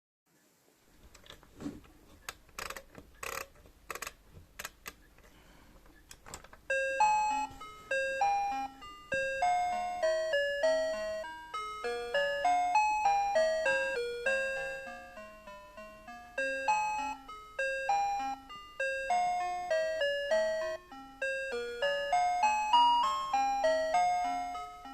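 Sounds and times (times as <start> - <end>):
sharp clicks: 2.3 - 5.0
alarm clock electronic melody: 6.7 - 24.9.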